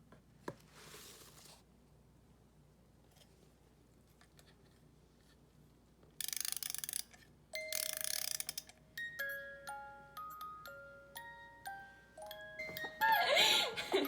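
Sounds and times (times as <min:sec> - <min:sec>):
music box key ratcheting clicks: 0:06.2 - 0:08.8
music box tune: 0:07.6 - 0:14.0.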